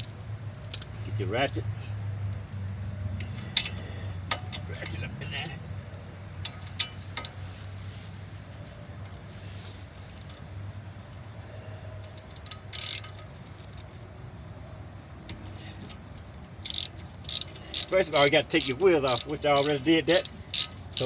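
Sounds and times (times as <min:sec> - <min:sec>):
steady low hum: 0:00.0 - 0:21.0
socket ratchet clicks: 0:12.0 - 0:13.8, 0:15.3 - 0:21.0.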